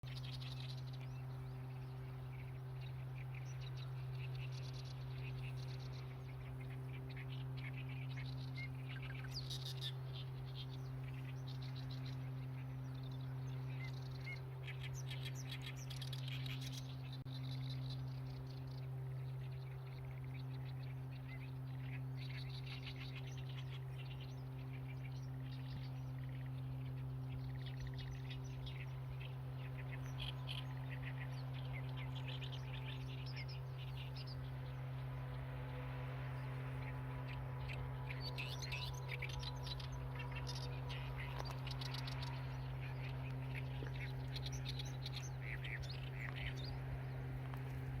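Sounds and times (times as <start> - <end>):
small birds chirping: 0.0 - 48.0
steady low hum: 0.0 - 48.0.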